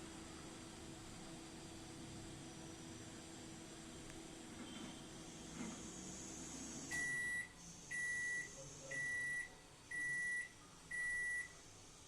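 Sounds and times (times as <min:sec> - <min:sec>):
appliance electronic beeping: 0:06.9 - 0:11.6.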